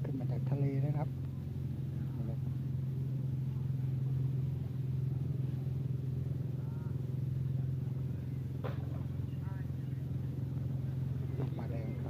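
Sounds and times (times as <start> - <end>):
engine idling: 0.0 - 12.0
faint voices: 1.0 - 12.0.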